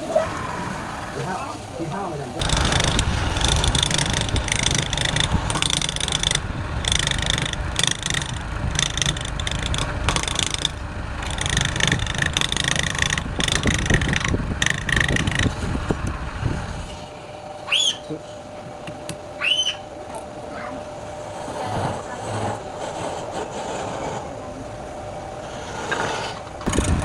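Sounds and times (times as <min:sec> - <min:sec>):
lathe low hum: 0:00.0 - 0:27.0
turning tool scraping wood: 0:01.1 - 0:17.1, 0:21.2 - 0:24.4, 0:25.4 - 0:27.0.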